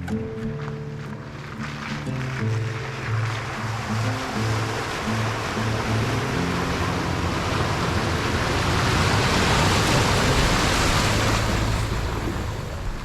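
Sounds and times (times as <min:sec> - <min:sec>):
low background music: 0:00.0 - 0:11.1
strong wind rushing: 0:04.0 - 0:13.0.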